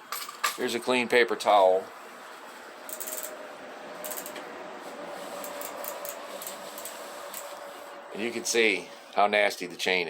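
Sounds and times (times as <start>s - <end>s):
bicycle hub ratchet ticking: 2.9s - 3.4s, 4.0s - 4.4s, 5.4s - 7.6s.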